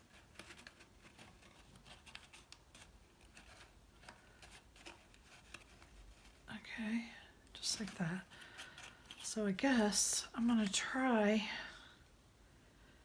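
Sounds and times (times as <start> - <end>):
light ticks and rustles of cardstock: 0.0 - 11.0.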